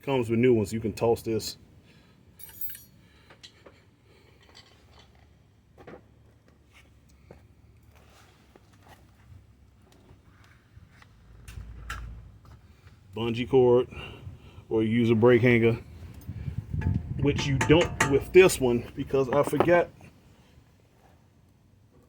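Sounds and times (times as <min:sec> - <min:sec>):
tools and parts clicking: 0:02.4 - 0:03.7, 0:16.2 - 0:18.6
low steady hum: 0:11.0 - 0:20.4.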